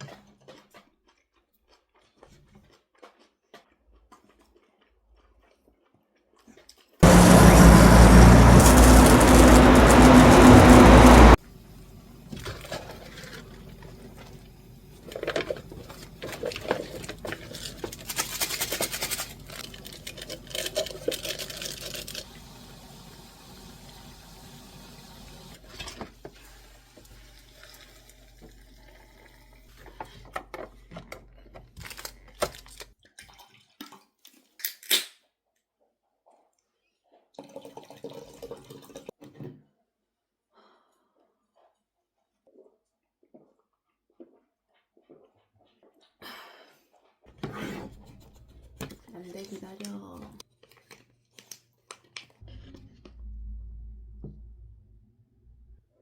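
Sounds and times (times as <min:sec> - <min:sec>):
steady low hum: 0:07.0 - 0:11.4.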